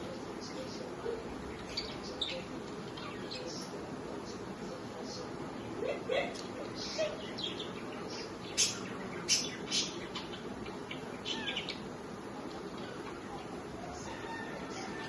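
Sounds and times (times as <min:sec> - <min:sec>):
steady background hiss: 0:00.0 - 0:15.0
budgerigars chirping: 0:06.8 - 0:11.9.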